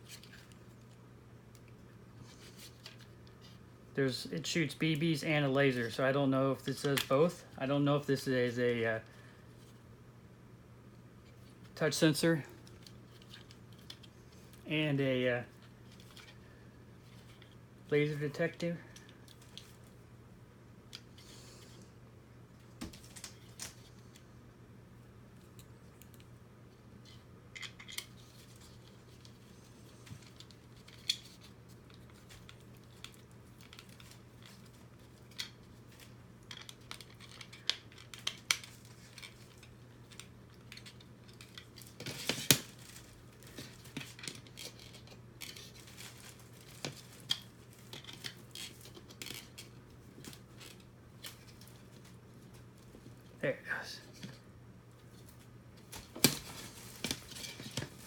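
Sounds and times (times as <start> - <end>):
plastic parts clicking and clattering: 35.3 - 51.7.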